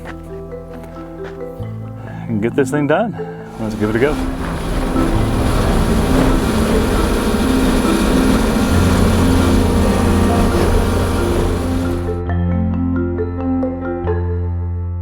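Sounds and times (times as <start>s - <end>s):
skid steer engine humming: 3.5s - 12.2s.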